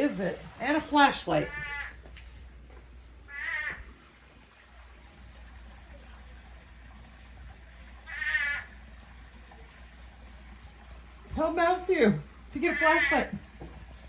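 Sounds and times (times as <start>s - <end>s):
insects trilling: 0.0s - 14.0s
animal giving harsh calls: 3.3s - 3.8s, 8.1s - 8.7s.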